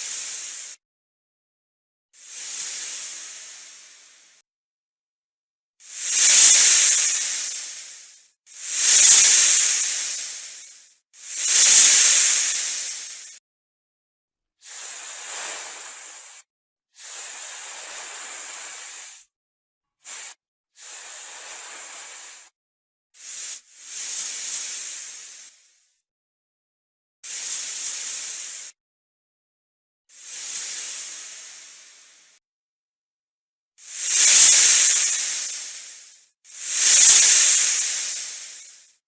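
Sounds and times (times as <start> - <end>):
snake hissing: 0.0 - 0.8, 2.2 - 4.4, 5.8 - 13.4, 14.6 - 19.2, 20.0 - 22.5, 23.2 - 25.6, 27.3 - 28.8, 30.1 - 32.4, 33.8 - 39.0.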